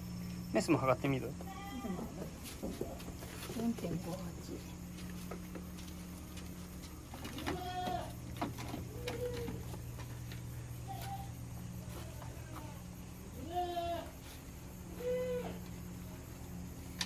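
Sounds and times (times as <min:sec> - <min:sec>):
steady low hum: 0:00.0 - 0:17.0
goats bleating: 0:01.4 - 0:02.2, 0:07.4 - 0:08.2, 0:11.9 - 0:14.2.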